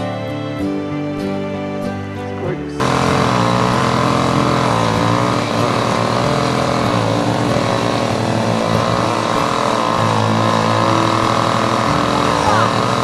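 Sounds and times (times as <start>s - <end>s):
chainsaw cutting tree: 2.8s - 13.0s.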